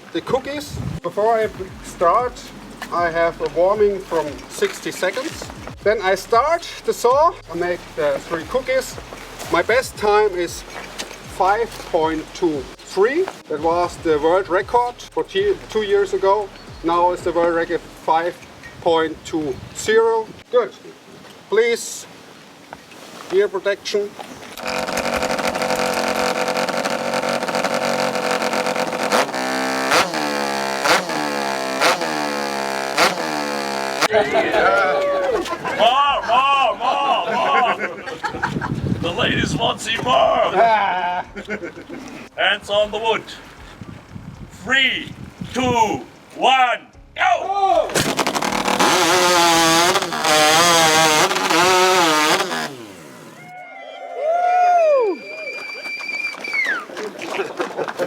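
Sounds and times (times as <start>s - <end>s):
racing chainsaw revving: 24.6s - 34.1s, 48.0s - 53.4s
people shouting and cheering: 34.1s - 37.9s, 47.2s - 48.0s, 53.4s - 57.2s.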